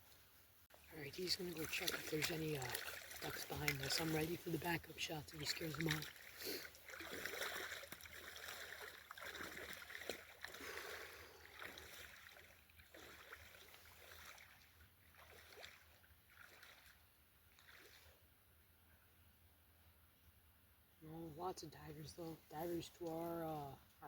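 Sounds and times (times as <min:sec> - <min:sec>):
person wading through water: 0:00.7 - 0:18.3.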